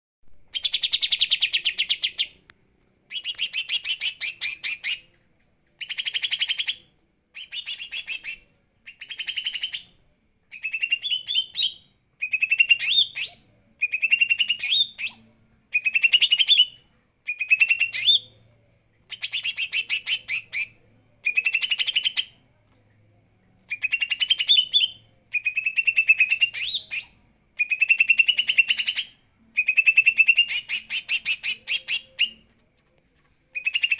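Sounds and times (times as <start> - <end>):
bird chattering song: 3.1 - 5.1.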